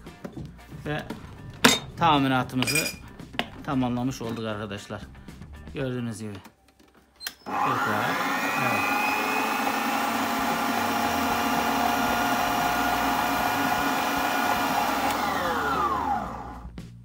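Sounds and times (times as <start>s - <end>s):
stand mixer motor whining: 7.4s - 16.7s.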